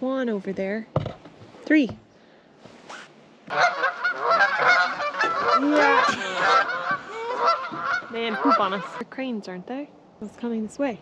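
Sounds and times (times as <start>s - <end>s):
geese honking: 3.5s - 9.0s.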